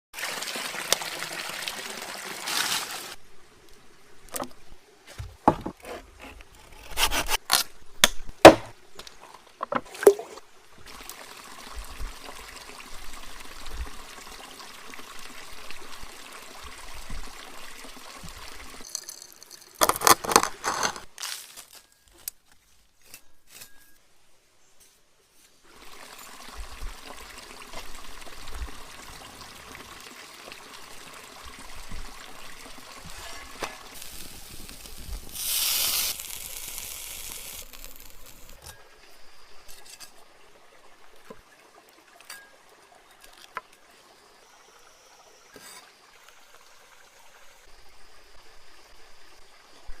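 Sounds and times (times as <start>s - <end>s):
liquid pouring and trickling: 9.8s - 21.1s, 25.7s - 39.0s
steady hiss: 33.9s - 38.6s.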